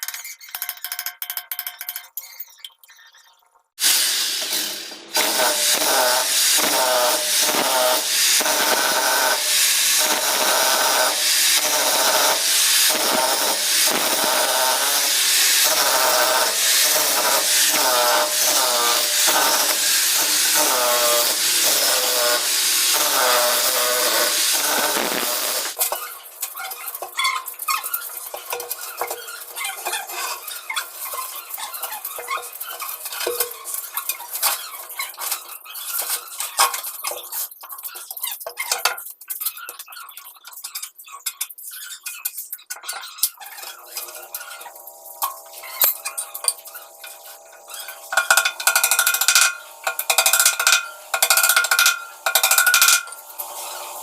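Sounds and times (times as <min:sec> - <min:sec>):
metallic clinking and tapping: 0:00.0 - 0:02.4, 0:45.2 - 0:53.2
power tool whining under load: 0:03.8 - 0:25.9.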